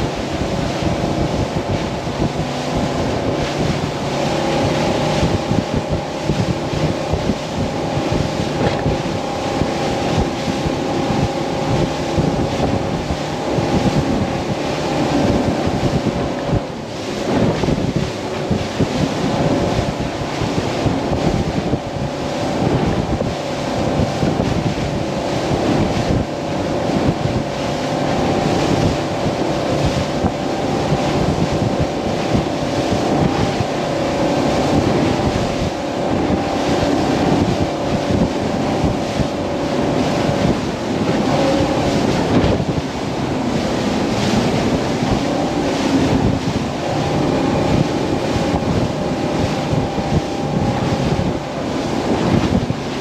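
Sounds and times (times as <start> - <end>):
hull splashing in choppy water: 0.0 - 53.0
outboard engine drone: 0.0 - 53.0
wind buffeting microphone: 0.0 - 53.0.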